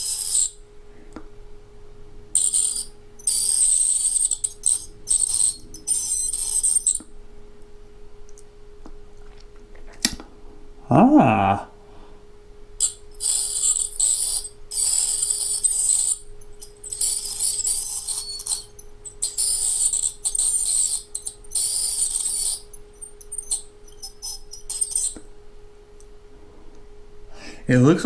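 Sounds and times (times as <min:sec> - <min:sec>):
electric dental scaler buzzing: 0:00.0 - 0:00.6, 0:02.4 - 0:07.1, 0:12.8 - 0:25.3
steady low hum: 0:00.0 - 0:27.9.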